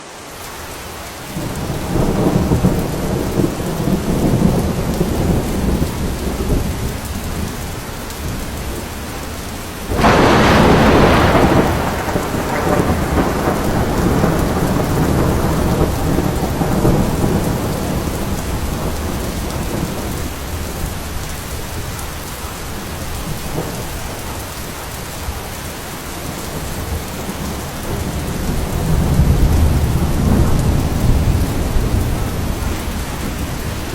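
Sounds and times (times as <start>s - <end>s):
heavy rain: 0.0s - 33.9s
thunder rumbling: 1.3s - 33.9s
sharp thunderclap: 1.4s - 7.5s, 9.9s - 21.1s, 26.6s - 33.9s.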